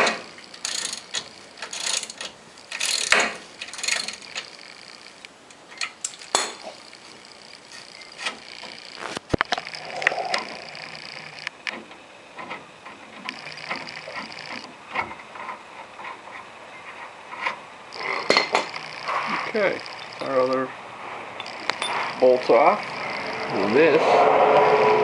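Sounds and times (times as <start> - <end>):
tools and bolts clinking on metal: 0.0 - 6.9, 7.7 - 8.8, 18.2 - 18.8, 19.8 - 20.4, 21.4 - 22.2.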